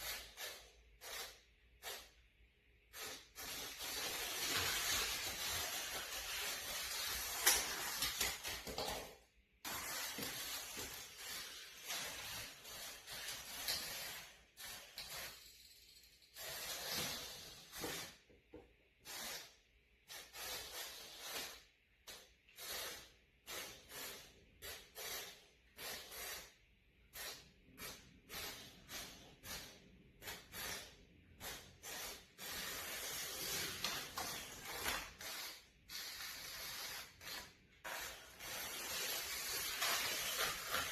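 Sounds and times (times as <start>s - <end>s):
toy car motor whirring: 9.8s - 18.2s, 22.5s - 40.9s.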